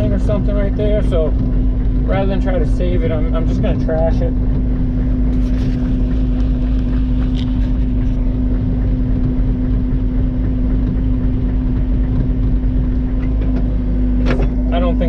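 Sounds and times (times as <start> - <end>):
excavator diesel engine running: 0.0 - 15.0.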